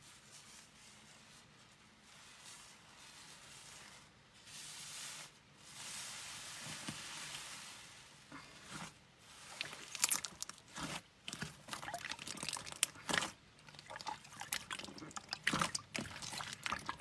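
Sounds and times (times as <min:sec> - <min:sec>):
slime squishing and crackling: 0:09.4 - 0:17.0.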